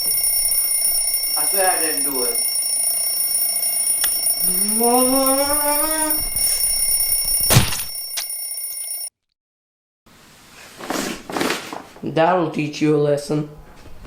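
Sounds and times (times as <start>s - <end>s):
alarm clock electronic tone: 0.0s - 9.1s
loud thump: 7.5s - 7.9s.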